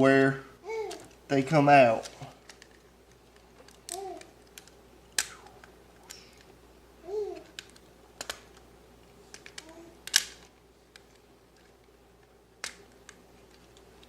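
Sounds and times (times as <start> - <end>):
plastic clicks and snaps: 2.0 - 6.5, 7.4 - 8.7, 9.3 - 14.0.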